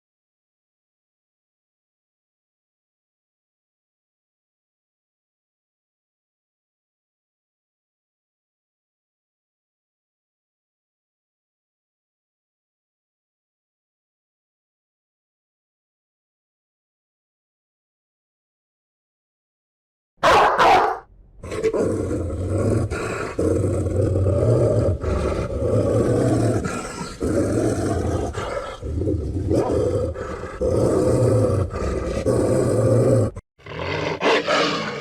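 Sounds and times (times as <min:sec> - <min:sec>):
deep animal-like growling: 0:20.2 - 0:35.0.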